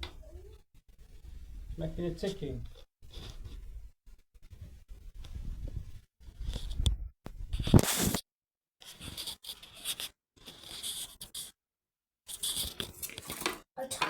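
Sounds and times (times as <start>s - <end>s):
scratchy crackling static: 0.0s - 8.2s.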